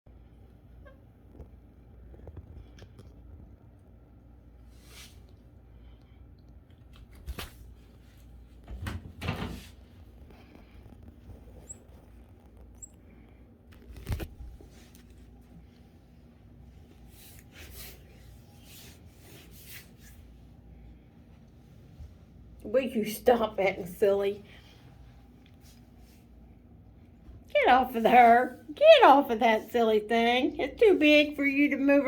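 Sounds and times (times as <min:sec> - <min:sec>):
knocks and rustles of handling: 0:06.7 - 0:16.0.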